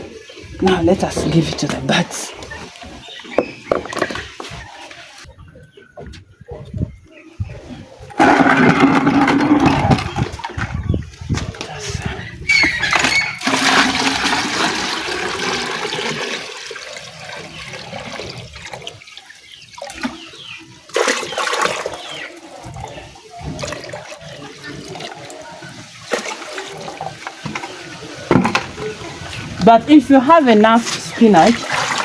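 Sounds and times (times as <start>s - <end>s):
liquid pouring into container: 13.0s - 20.2s, 31.4s - 32.0s.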